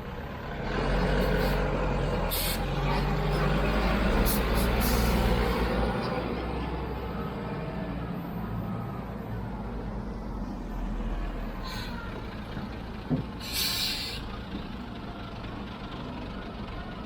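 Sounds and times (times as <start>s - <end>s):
diesel machinery engine running: 0.0s - 17.0s
air hissing: 13.4s - 14.2s.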